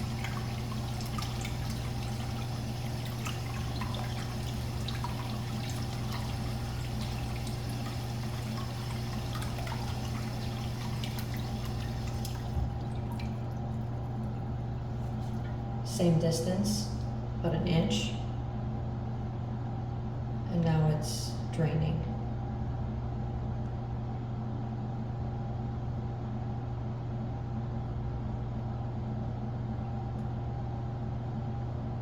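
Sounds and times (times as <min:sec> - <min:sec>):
urinal flushing water: 0:00.0 - 0:17.1.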